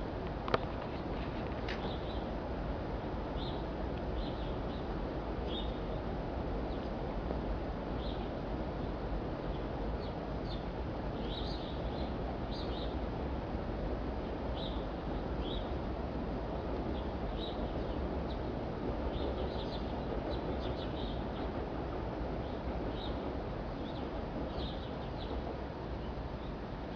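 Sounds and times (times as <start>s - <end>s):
city background rush: 0.0s - 26.9s
small birds chirping: 1.7s - 2.3s, 3.4s - 6.0s, 8.0s - 13.1s, 14.5s - 15.7s, 16.8s - 18.5s, 19.1s - 21.6s, 22.4s - 26.6s.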